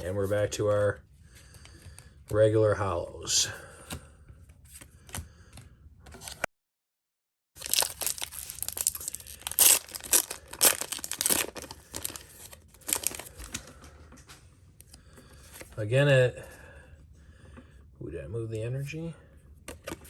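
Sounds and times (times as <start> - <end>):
foil wrapper tearing and crinkling: 7.6 - 13.6.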